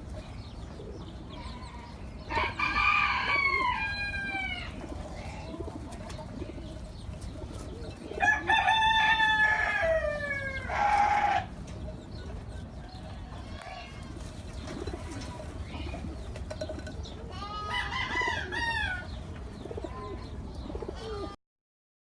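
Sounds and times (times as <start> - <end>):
rooster crowing: 2.3 - 4.7, 8.2 - 11.5, 17.6 - 19.1.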